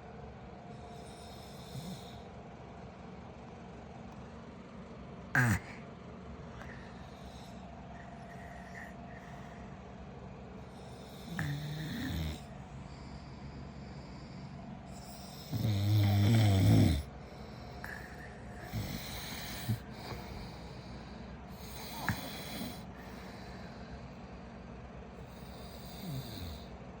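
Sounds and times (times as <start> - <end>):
person snoring: 0.9 - 2.2, 5.4 - 5.8, 10.8 - 23.8, 25.2 - 26.7.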